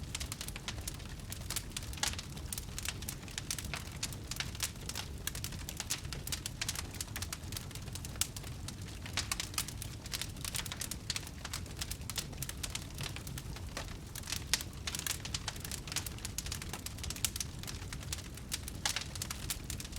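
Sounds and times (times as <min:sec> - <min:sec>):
fire crackling: 0:00.0 - 0:19.9.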